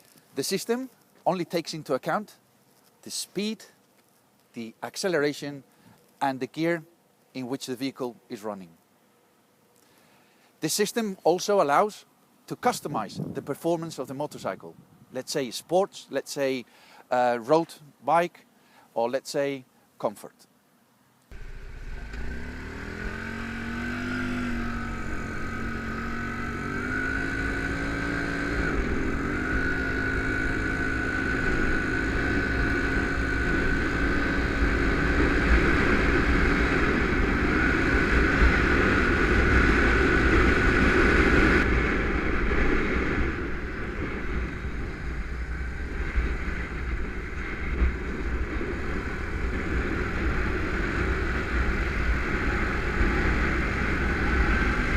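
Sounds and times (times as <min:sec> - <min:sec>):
low wind-like rumble: 0:21.3 - 0:54.9
motorcycle engine accelerating: 0:21.3 - 0:54.9.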